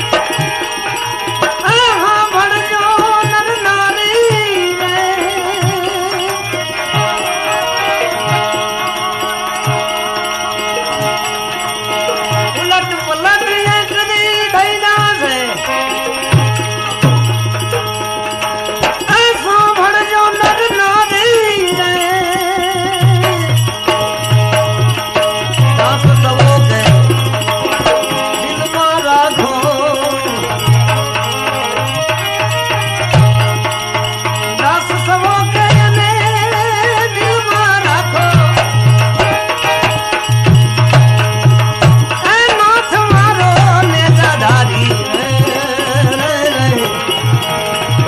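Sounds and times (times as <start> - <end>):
jingling percussion: 0.0 - 48.0
hand drum beat: 14.9 - 48.0.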